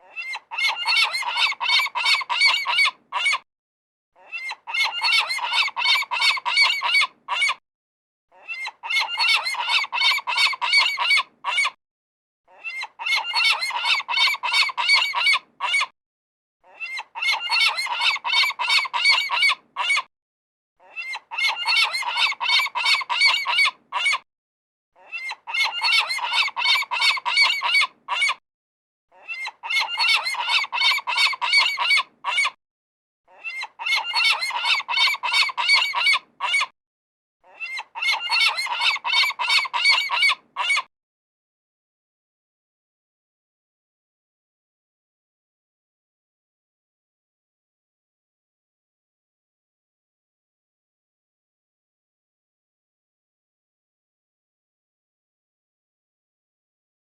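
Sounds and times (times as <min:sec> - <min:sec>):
seagulls calling: 0:00.2 - 0:03.4, 0:04.3 - 0:07.6, 0:08.5 - 0:11.7, 0:12.7 - 0:15.9, 0:21.0 - 0:24.2, 0:25.1 - 0:28.4, 0:29.3 - 0:32.5, 0:33.4 - 0:36.7, 0:37.6 - 0:40.8.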